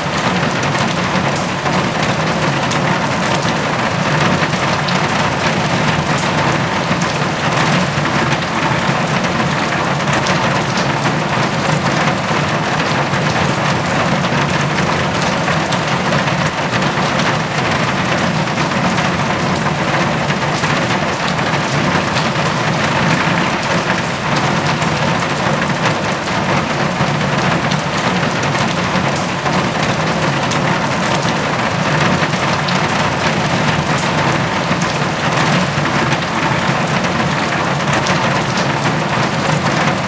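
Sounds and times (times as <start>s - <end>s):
heavy rain on a metal roof: 0.0s - 40.0s.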